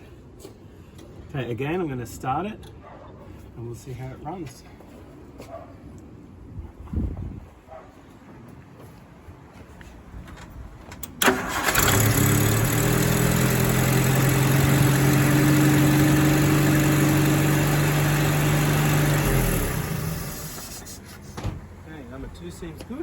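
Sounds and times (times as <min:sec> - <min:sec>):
car engine starting and idling: 0:11.0 - 0:21.0.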